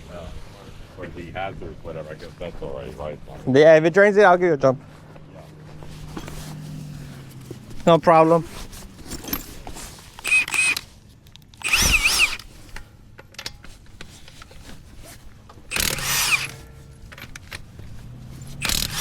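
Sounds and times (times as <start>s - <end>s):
impact wrench whining: 9.0s - 10.9s, 11.6s - 12.8s, 15.7s - 17.7s, 18.4s - 19.0s.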